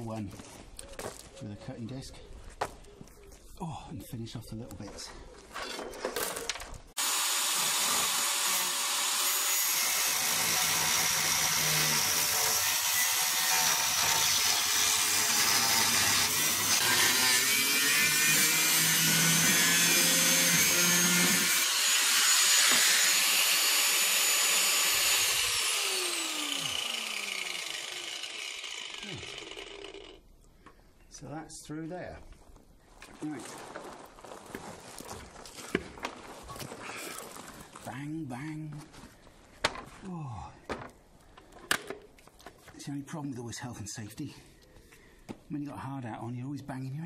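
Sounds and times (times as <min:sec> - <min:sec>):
angle grinder cutting steel: 0:07.0 - 0:30.2
grinder disc spinning down: 0:22.4 - 0:30.2.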